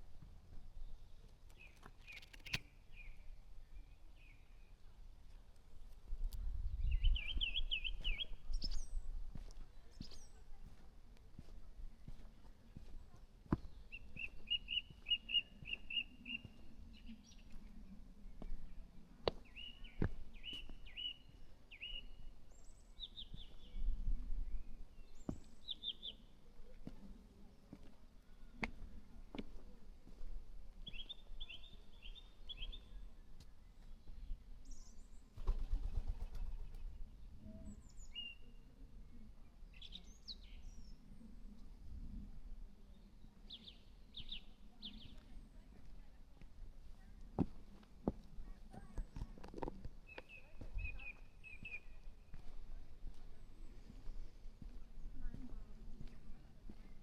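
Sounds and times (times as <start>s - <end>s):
songbirds singing: 0.0s - 57.0s
sharp clicks: 1.6s - 2.7s.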